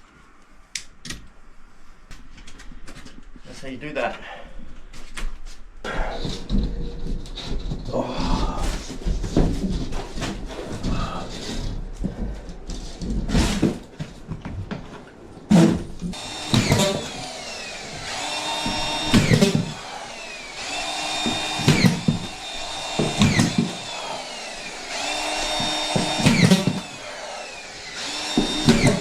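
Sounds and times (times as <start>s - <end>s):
knocks and clatter: 6.2s - 29.0s
power drill whining: 15.5s - 29.0s.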